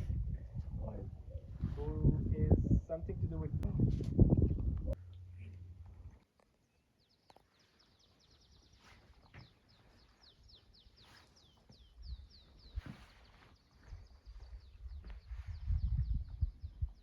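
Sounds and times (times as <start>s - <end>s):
small bird chirping: 6.5s - 17.0s.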